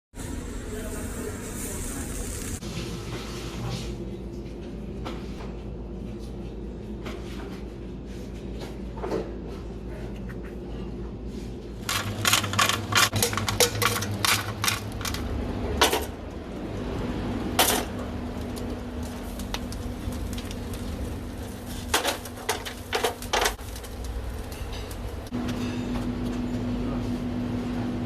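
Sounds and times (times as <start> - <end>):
metal utensils clanking: 11.8 - 16.2, 21.7 - 23.6.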